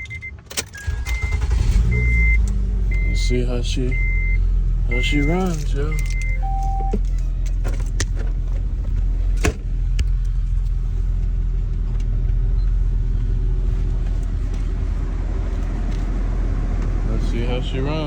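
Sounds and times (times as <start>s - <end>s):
short beep: 0.0s - 3.3s, 3.9s - 7.0s
car engine and exhaust rumbling: 0.0s - 18.0s.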